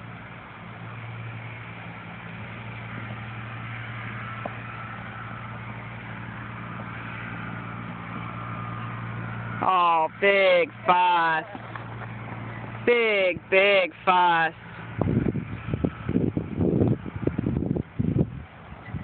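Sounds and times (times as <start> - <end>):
engine idling hum: 0.0 - 19.0.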